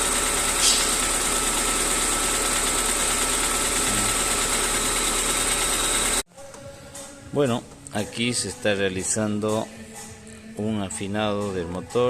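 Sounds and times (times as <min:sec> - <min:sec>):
car engine idling: 0:00.0 - 0:06.2
valve train knocking: 0:00.0 - 0:06.2.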